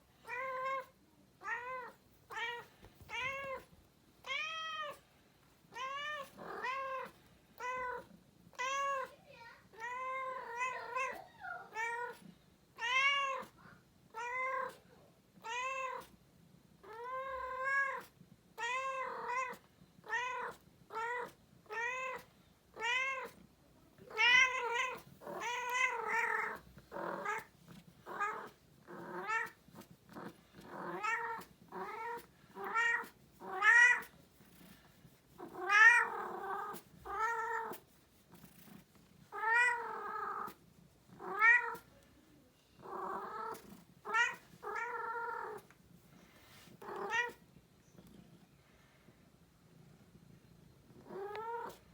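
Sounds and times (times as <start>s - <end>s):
cat meowing: 0.3s - 3.7s, 15.4s - 16.0s, 18.6s - 23.4s, 24.1s - 27.5s, 28.1s - 29.6s, 30.8s - 34.1s, 35.6s - 37.8s, 39.3s - 40.5s, 42.9s - 45.6s, 46.8s - 47.4s.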